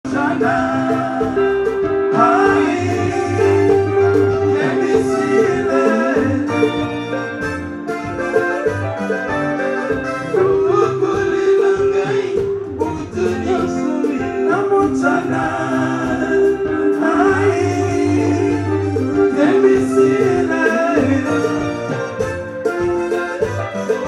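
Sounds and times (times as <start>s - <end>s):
person singing: 0.0s - 8.4s, 9.9s - 22.6s
live band music: 0.0s - 24.0s.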